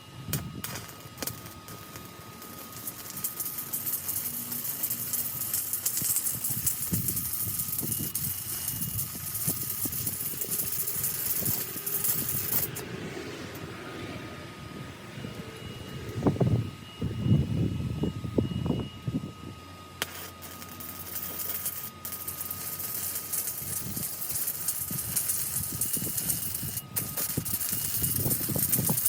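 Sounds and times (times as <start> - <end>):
welding arc crackling and sizzling: 0.0 - 13.6, 19.8 - 29.0.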